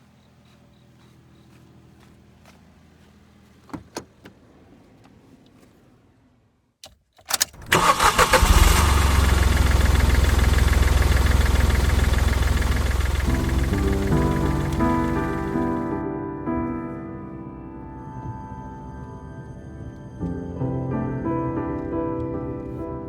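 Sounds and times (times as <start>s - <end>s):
car engine starting and running: 0.2s - 16.0s.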